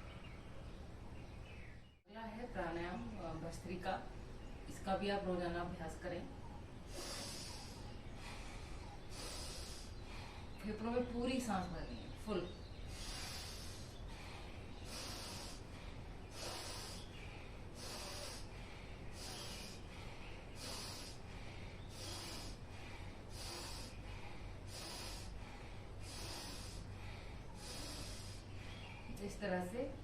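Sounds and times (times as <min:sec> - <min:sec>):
forceful breathing through nose: 0:06.8 - 0:11.4, 0:12.0 - 0:29.2.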